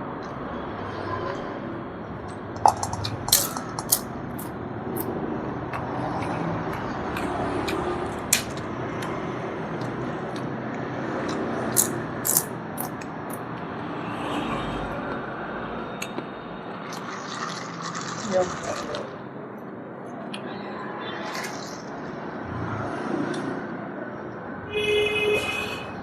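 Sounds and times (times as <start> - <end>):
eating clicks and crunches: 2.2 - 13.6.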